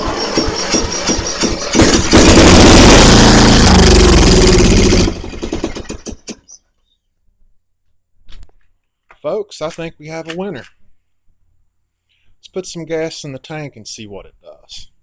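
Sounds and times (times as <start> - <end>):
electric starter cranking: 0.0 - 6.5
lawn mower engine running: 0.0 - 6.5.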